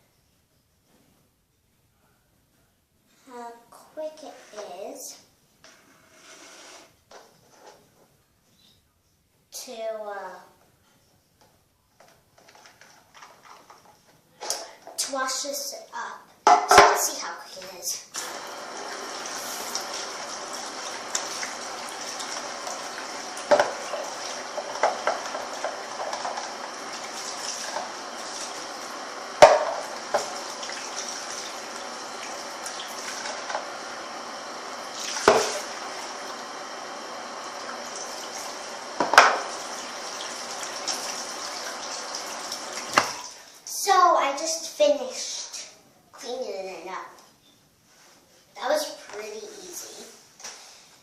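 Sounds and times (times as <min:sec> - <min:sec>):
tap water running into sink: 0:18.2 - 0:43.4.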